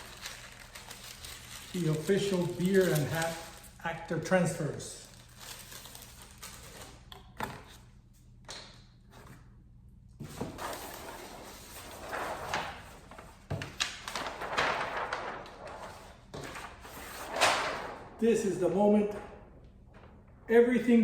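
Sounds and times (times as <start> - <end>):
packaging rustling: 0.0 - 3.8, 5.0 - 7.0, 10.6 - 18.5.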